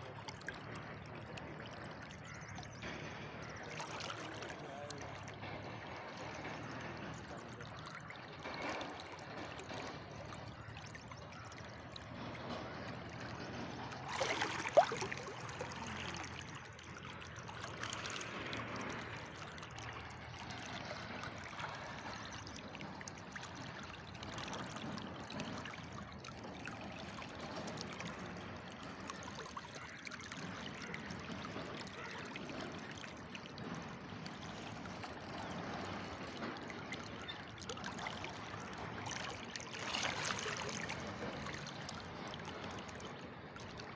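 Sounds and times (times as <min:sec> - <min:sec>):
river water flowing: 0:00.0 - 0:43.9.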